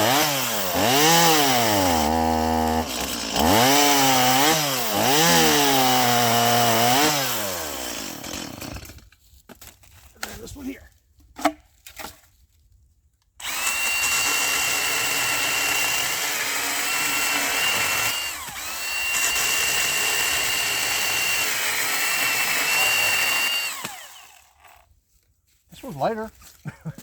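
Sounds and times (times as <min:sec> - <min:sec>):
electric chainsaw cutting wood: 0:00.0 - 0:09.0, 0:13.4 - 0:24.9.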